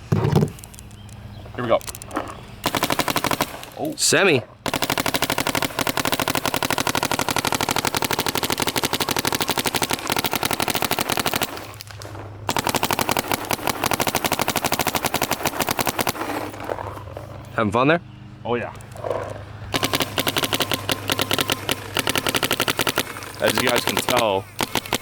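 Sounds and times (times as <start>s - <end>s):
paintball marker firing pops: 18.8s - 25.0s.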